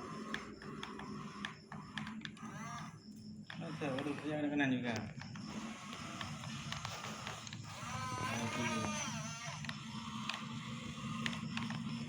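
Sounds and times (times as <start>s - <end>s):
scattered clicks: 0.0s - 12.0s
small electric motors running: 0.0s - 12.0s.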